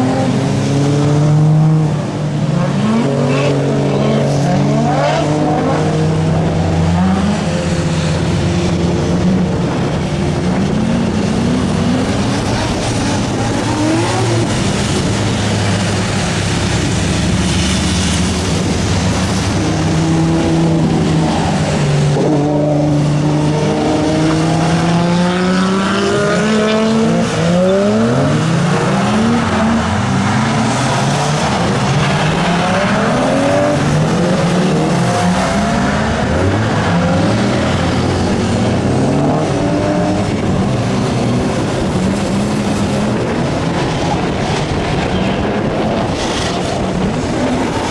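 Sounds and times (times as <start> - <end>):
racing car engines revving: 0.0 - 47.9
road noise: 0.0 - 47.9.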